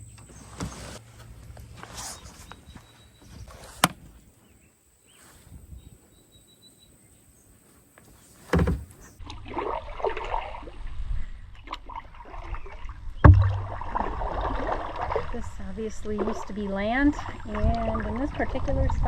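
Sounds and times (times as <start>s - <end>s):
sharp thump: 8.5s - 9.0s, 13.3s - 14.2s
low rumble: 13.3s - 14.5s.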